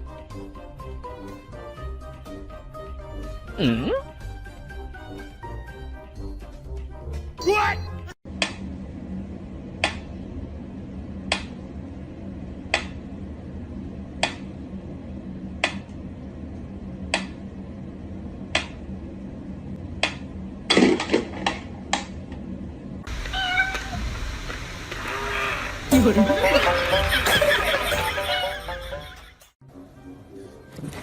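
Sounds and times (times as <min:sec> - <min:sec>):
cat meowing: 0:23.2 - 0:24.0.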